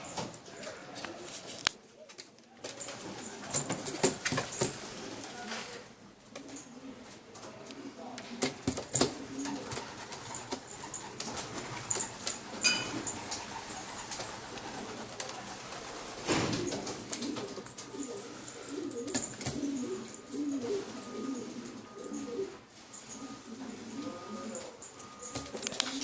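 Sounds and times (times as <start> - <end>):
pigeons cooing: 6.3 - 26.0.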